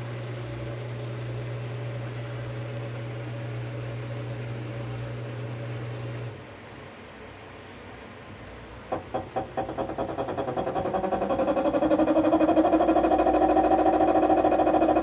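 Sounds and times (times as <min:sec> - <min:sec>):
washing machine low hum: 0:00.0 - 0:15.0
washing machine rubbing noise: 0:08.9 - 0:15.0.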